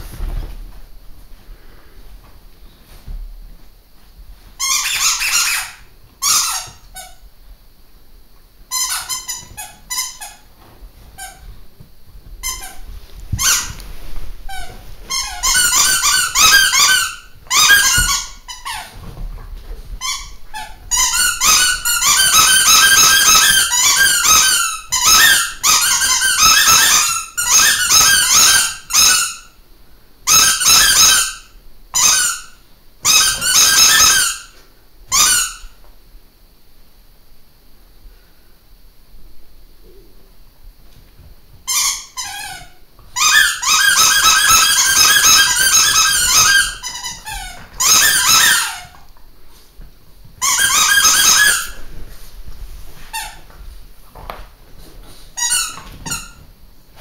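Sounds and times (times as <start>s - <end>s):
squeaky toys squeaking: 4.6s - 6.8s, 33.1s - 34.5s, 43.2s - 48.9s, 50.4s - 51.8s.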